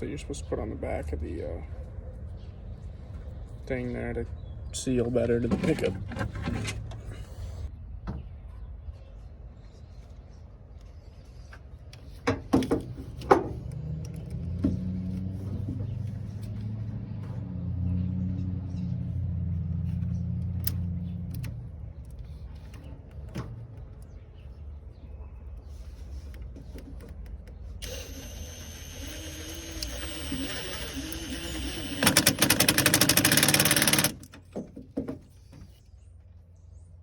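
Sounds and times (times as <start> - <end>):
low hum: 27.8 - 34.0
power drill running: 27.8 - 34.3.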